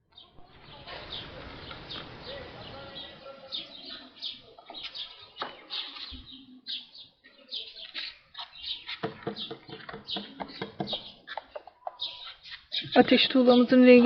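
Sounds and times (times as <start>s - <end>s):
small birds chirping: 0.0s - 14.0s
sharp taps or knocks: 8.9s - 12.0s.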